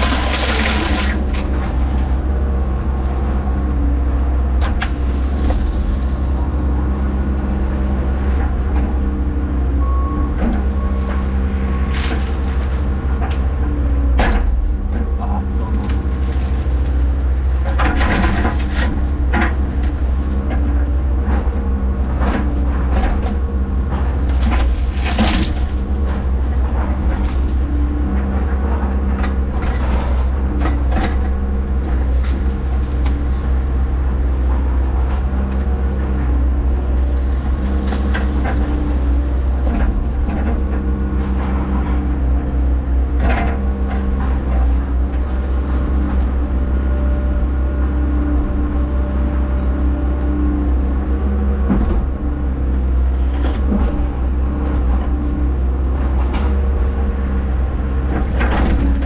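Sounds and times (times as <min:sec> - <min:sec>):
bucket knocking and cracking brush: 0:00.0 - 0:01.4
excavator diesel engine running: 0:00.0 - 0:59.0.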